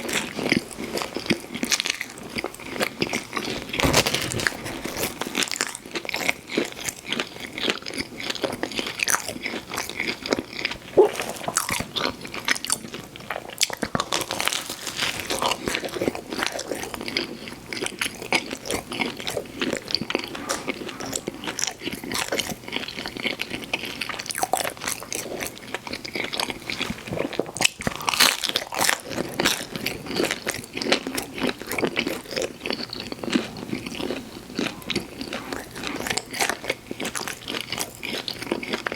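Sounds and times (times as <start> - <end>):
biting and chewing pizza crust: 0.0 - 38.9
wet mouth sounds: 3.1 - 5.6, 10.9 - 12.2, 19.2 - 22.8, 31.8 - 38.9.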